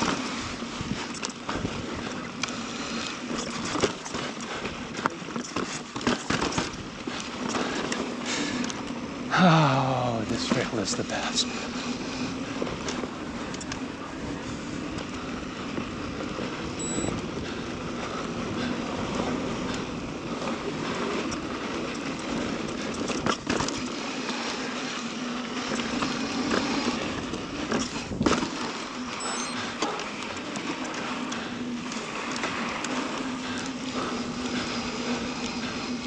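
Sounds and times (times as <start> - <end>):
bike clicks and rattles: 0.0 - 36.0
bike tyres rushing on dirt trail: 0.0 - 36.0.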